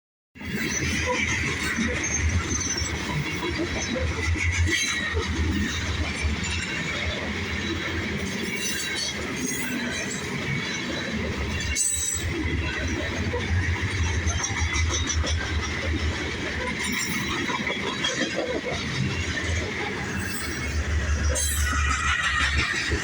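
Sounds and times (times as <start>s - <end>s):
train wheels rumbling on rail: 0.4s - 23.0s
high-pitched wheel squeal: 20.2s - 23.0s.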